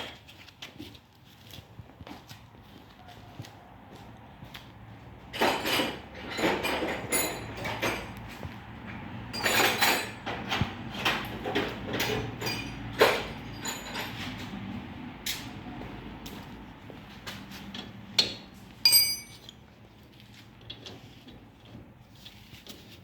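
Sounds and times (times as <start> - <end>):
metal tools clinking and scraping: 5.4 - 8.2, 9.3 - 10.6, 11.4 - 14.5, 18.8 - 19.6
sharp metallic knock: 18.9 - 19.4.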